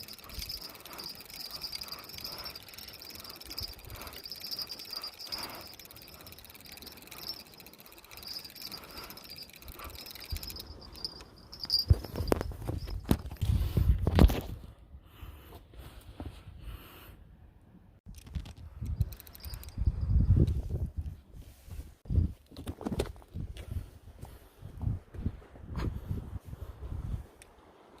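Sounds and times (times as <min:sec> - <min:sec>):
insects chirping: 0:00.0 - 0:12.5.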